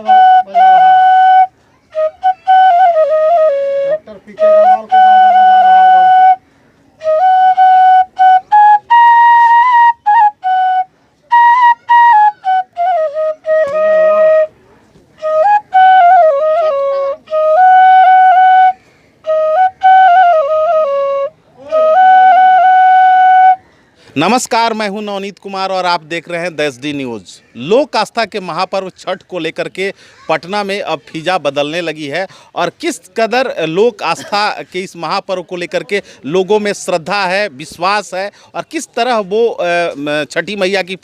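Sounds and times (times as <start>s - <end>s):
bamboo flute melody: 0.0s - 23.7s.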